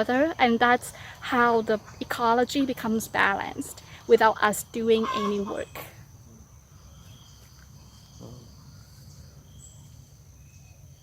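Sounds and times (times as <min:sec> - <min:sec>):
insects trilling: 0:00.0 - 0:11.0
short faint calls: 0:04.9 - 0:09.8.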